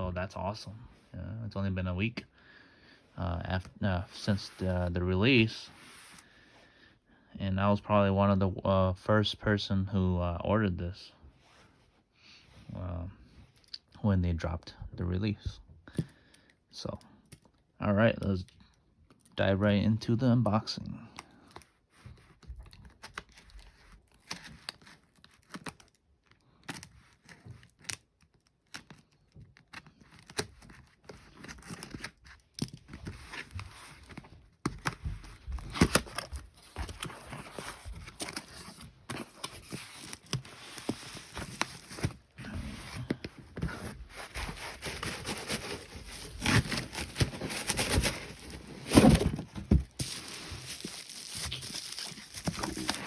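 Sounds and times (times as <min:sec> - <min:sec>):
cardboard crinkling and scraping: 0:03.5 - 0:06.3, 0:21.4 - 0:53.0
tape tearing: 0:35.6 - 0:53.0.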